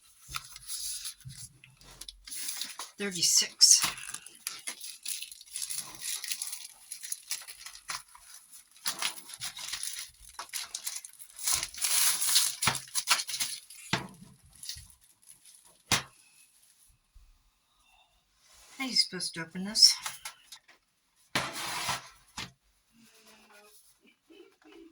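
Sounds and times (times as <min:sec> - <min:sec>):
packaging crinkling and tearing: 0:00.2 - 0:03.0, 0:03.8 - 0:16.2.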